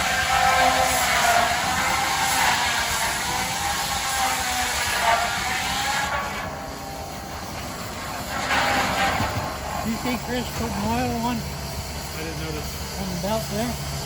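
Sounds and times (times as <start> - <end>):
steam hissing with whistle-like tone: 0.0 - 14.0
low running engine noise: 6.1 - 14.0.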